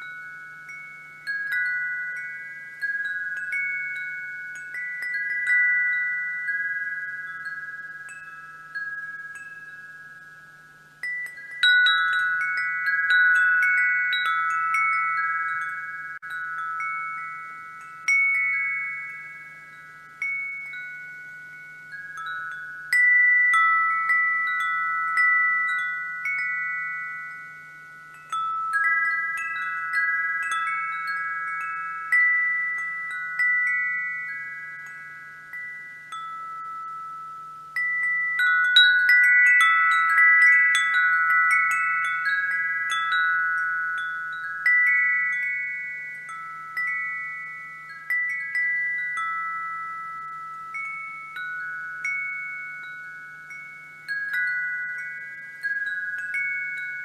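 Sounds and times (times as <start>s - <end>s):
wind chimes ringing: 0.0s - 57.0s.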